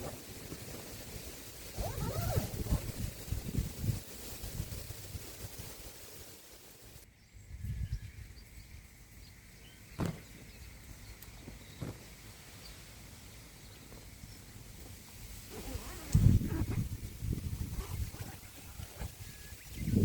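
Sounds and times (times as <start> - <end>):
wind gusting: 0.0 - 8.3, 14.7 - 20.0.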